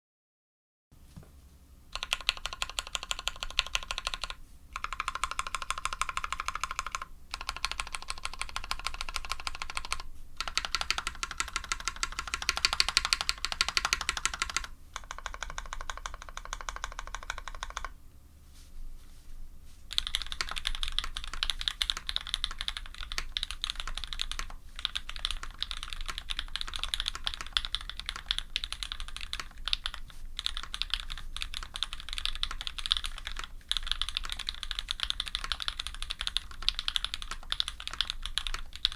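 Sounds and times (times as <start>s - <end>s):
mechanical keyboard typing: 1.9s - 18.0s, 19.9s - 38.9s.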